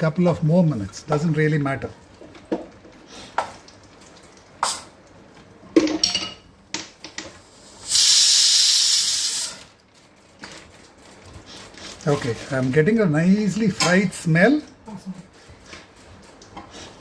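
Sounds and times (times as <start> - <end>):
pressure cooker steam hiss: 7.4 - 9.7.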